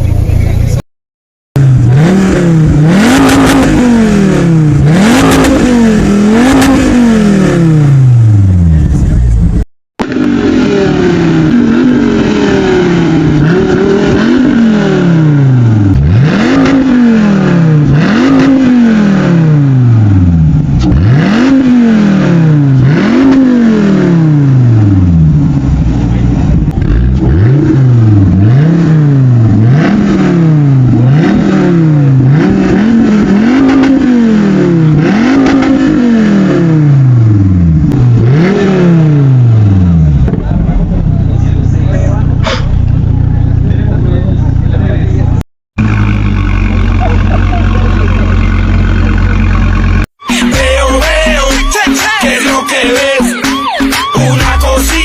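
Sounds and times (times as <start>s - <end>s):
car engine revving: 1.6s - 55.0s.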